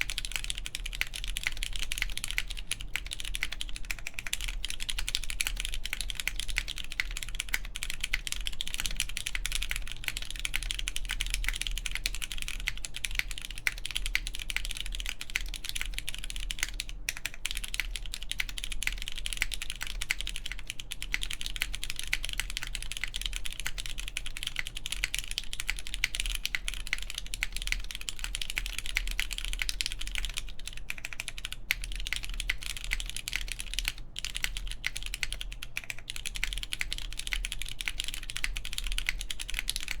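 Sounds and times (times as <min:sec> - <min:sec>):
mechanical keyboard typing: 0:00.0 - 0:40.0.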